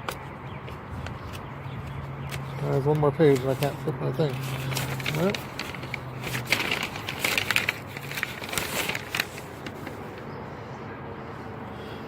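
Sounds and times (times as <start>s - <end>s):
paper rustling and crinkling: 2.3s - 10.3s.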